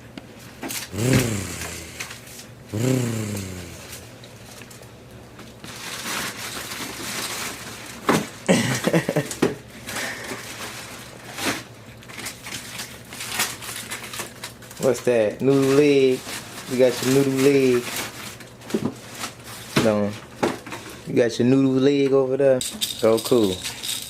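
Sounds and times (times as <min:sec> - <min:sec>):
wordless vocal sounds: 0:00.9 - 0:04.1.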